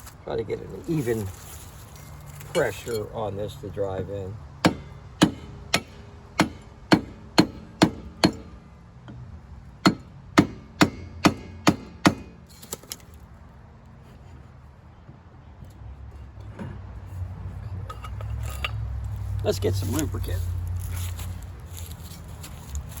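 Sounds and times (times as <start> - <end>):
hammer striking metal hub: 4.6 - 8.5, 9.8 - 12.7, 17.7 - 18.8.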